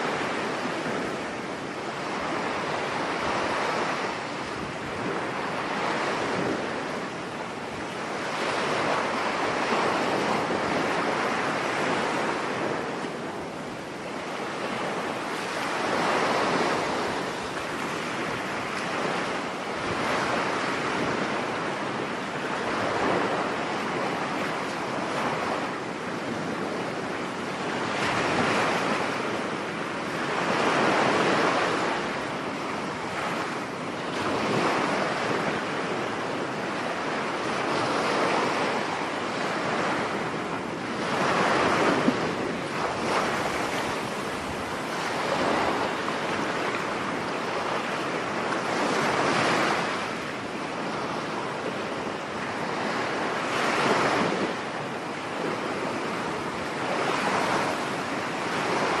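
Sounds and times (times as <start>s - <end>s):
wind: 0.0s - 59.0s
surf breaking on beach: 27.7s - 59.0s.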